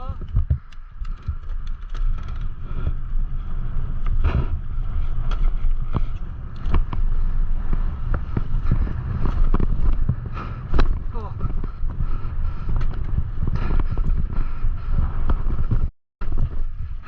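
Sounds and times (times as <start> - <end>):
bike chain and frame rattling: 0.0 - 17.0
tyre noise on dirt: 0.0 - 17.0
wind rumbling on microphone: 0.0 - 17.0.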